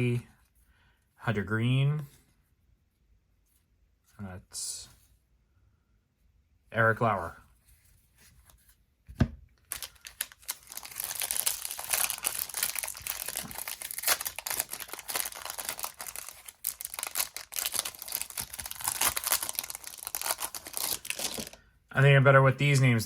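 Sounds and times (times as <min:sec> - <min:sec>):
foil wrapper tearing and crinkling: 0:09.7 - 0:21.6.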